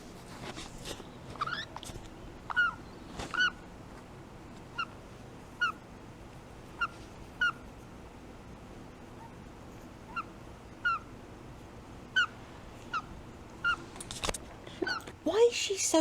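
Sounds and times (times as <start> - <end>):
parrot chirping: 1.4 - 1.9, 2.5 - 3.7, 4.7 - 5.9, 6.7 - 7.7, 10.0 - 11.2, 12.0 - 13.9, 14.8 - 15.1.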